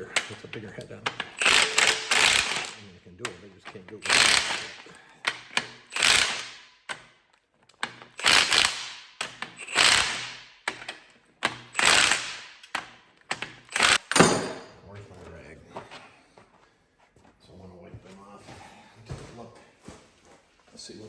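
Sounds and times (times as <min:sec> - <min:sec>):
ratchet wrench clicking: 0:01.0 - 0:07.1, 0:07.7 - 0:14.2.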